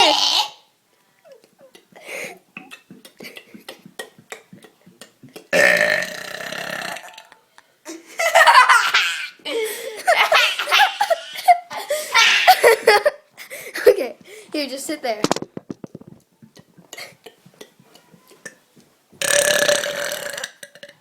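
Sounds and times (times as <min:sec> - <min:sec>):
person burping: 0:00.0 - 0:00.7, 0:05.5 - 0:07.3, 0:19.2 - 0:21.0
laughter: 0:07.9 - 0:13.2.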